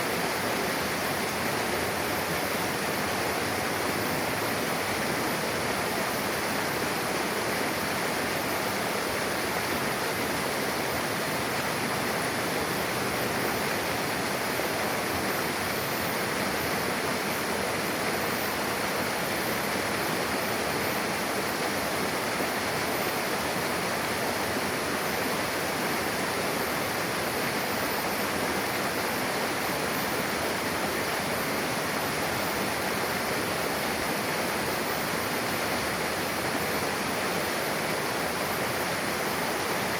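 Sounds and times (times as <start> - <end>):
river rushing over rocks: 0.0 - 39.9.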